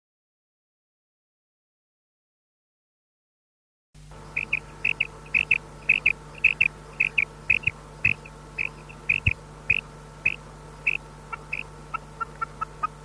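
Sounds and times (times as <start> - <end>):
faint low hum: 4.0 - 13.0
quail calling double notes: 4.2 - 13.0.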